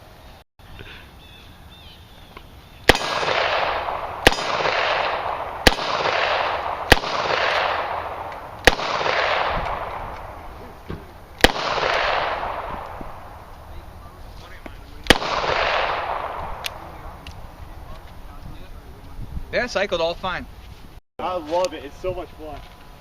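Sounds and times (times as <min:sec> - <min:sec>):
revolver shots with rolling echo: 0:02.8 - 0:14.2, 0:15.0 - 0:17.4.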